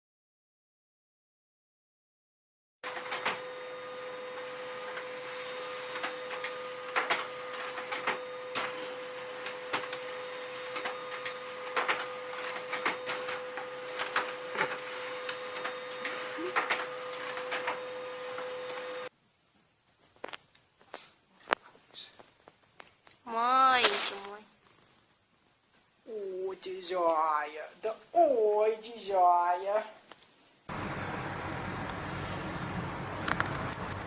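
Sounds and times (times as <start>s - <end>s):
steady mechanical hum: 30.7s - 34.0s.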